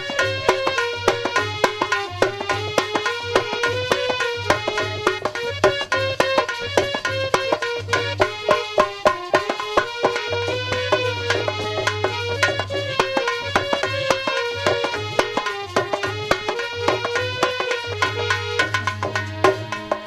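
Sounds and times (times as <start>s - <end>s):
hand drum strokes: 0.0s - 20.0s
melody instrument playing: 7.5s - 19.8s.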